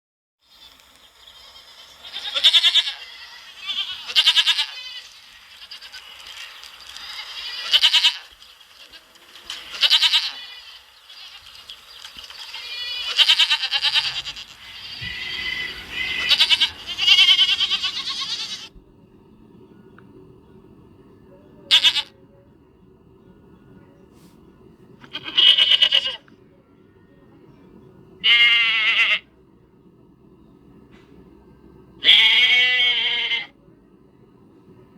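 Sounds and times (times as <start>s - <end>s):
low steady hum: 0.5s - 34.9s
goats bleating: 1.6s - 11.6s, 12.2s - 18.7s, 21.7s - 22.1s, 25.0s - 26.3s, 28.2s - 29.3s, 32.0s - 33.5s.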